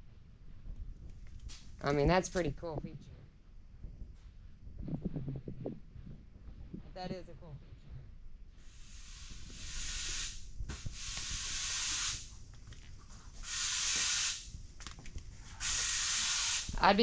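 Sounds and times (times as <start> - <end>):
high hissing noise bursts: 8.5 - 17.0.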